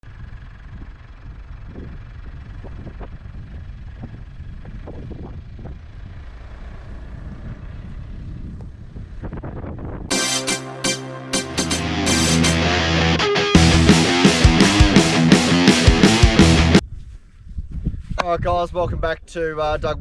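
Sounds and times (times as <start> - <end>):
electric guitar rock music: 10.1 - 16.8.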